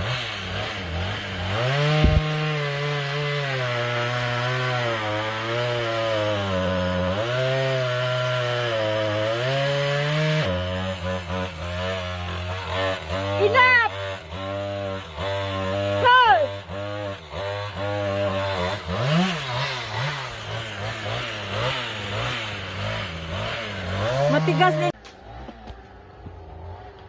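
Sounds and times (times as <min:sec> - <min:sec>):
chainsaw cutting wood: 0:00.0 - 0:27.0
sharp thump: 0:02.0 - 0:02.3.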